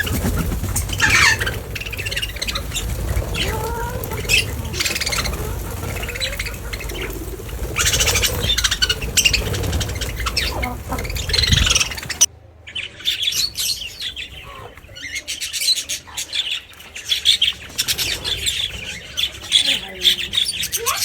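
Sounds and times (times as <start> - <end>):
wind rumble on microphone: 0.0 - 12.3
birds chirping and squawking: 0.0 - 21.0.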